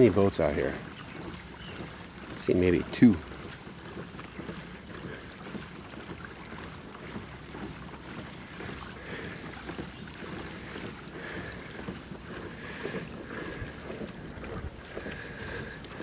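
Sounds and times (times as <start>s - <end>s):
boat motor running: 0.0s - 16.0s
wind rumbling on microphone: 12.9s - 16.0s.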